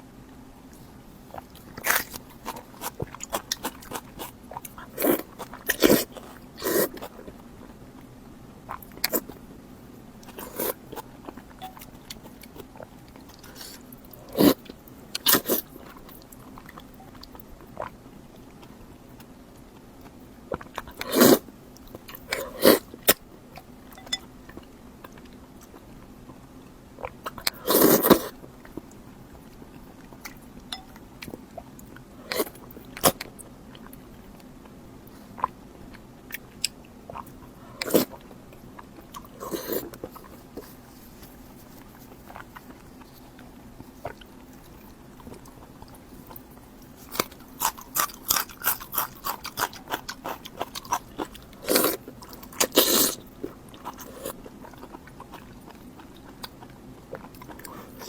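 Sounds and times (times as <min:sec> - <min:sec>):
wet chewing: 0:35.2 - 0:58.0.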